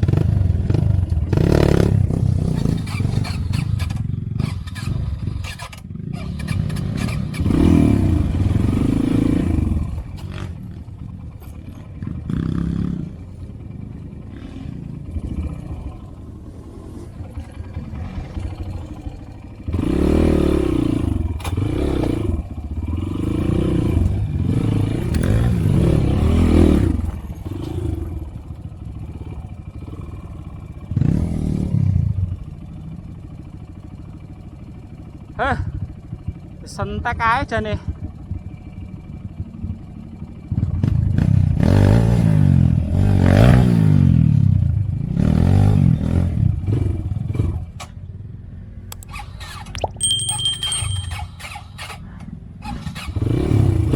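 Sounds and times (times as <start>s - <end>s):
motorcycle engine revving: 0.0s - 36.6s, 37.8s - 53.9s
rattling and clattering: 49.7s - 51.8s.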